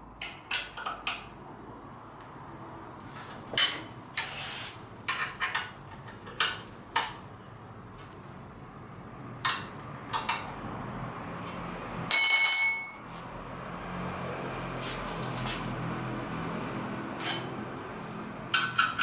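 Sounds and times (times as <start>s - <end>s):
bell-like metallic ring: 12.1s - 13.1s, 17.2s - 17.6s
metal parts clinking: 17.2s - 17.5s.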